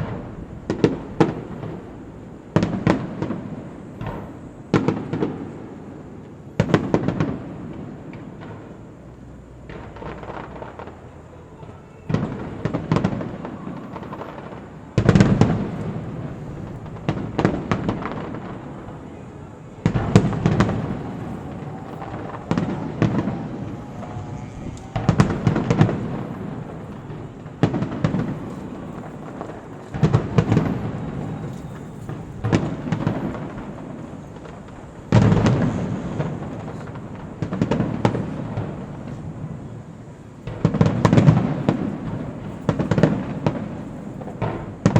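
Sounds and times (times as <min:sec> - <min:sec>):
firework crackling: 0:00.0 - 0:44.9
firework shells bursting: 0:06.7 - 0:38.9.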